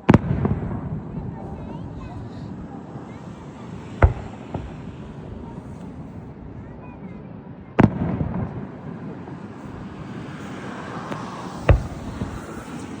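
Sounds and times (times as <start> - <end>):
faint firework cracks: 0.0 - 6.7, 7.8 - 13.0
sharp firework bang: 0.0 - 6.9, 11.0 - 13.0
fireworks rumbling blasts: 0.0 - 13.0.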